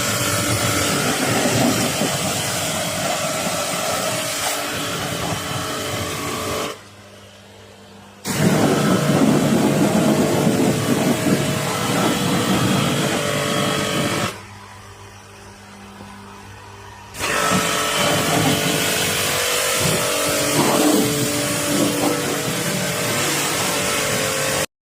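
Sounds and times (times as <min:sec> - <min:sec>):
water jet spraying: 0:00.0 - 0:06.8, 0:08.2 - 0:14.3, 0:17.2 - 0:24.7
steady hum: 0:00.0 - 0:24.7.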